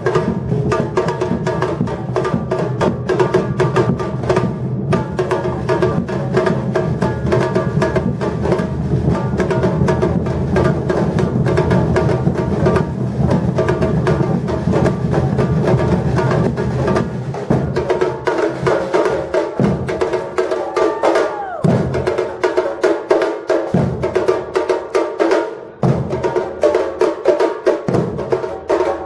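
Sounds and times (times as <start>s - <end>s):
drum ensemble playing: 0.0s - 29.0s.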